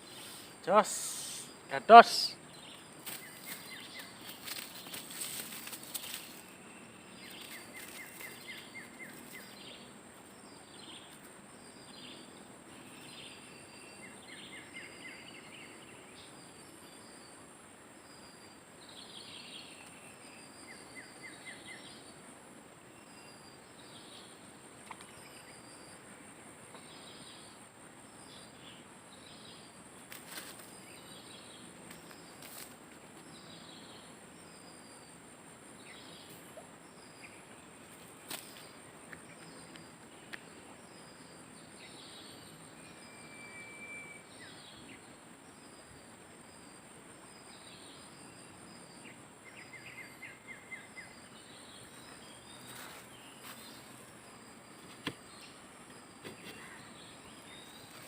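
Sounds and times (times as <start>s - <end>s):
bird chirping: 0.0s - 17.4s, 38.5s - 58.0s.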